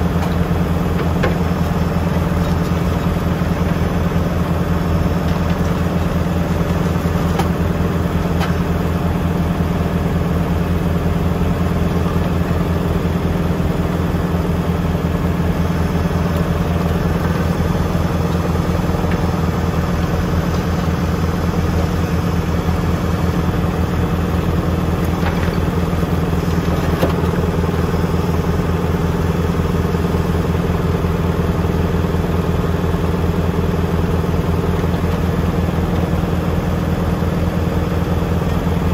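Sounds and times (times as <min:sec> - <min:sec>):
tractor diesel engine running: 0:00.0 - 0:38.9.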